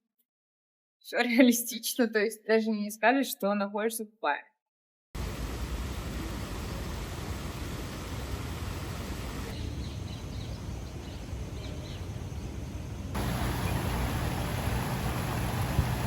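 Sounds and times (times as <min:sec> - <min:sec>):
outdoor low rumble: 0:05.2 - 0:16.0.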